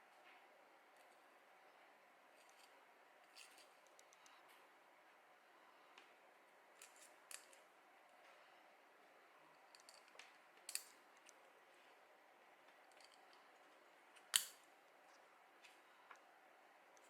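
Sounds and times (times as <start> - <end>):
plastic parts clicking and snipping: 6.8 - 7.6, 9.7 - 11.4, 14.2 - 14.6.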